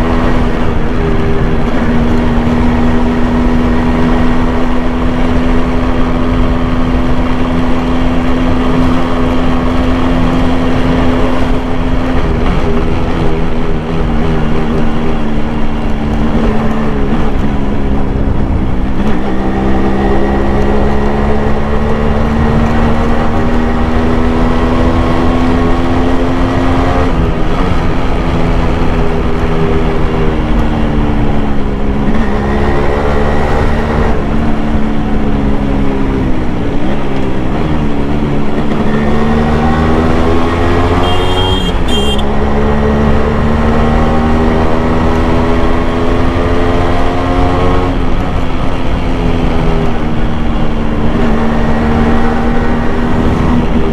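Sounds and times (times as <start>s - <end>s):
motorcycle engine revving: 0.0s - 53.9s
short high beep: 41.0s - 42.3s.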